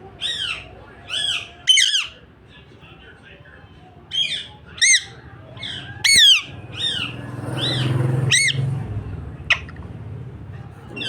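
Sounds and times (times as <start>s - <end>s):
parrot squawking: 0.2s - 2.2s, 4.1s - 8.7s, 9.5s - 9.9s.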